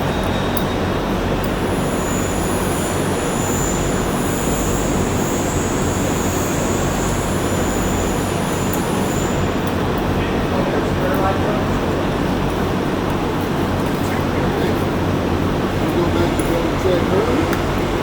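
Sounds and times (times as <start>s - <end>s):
high-pitched whine: 0.0s - 9.9s.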